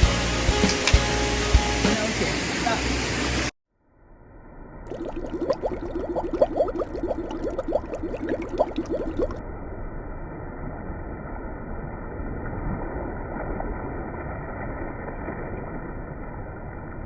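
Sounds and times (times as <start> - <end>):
water rushing: 4.9 - 9.4.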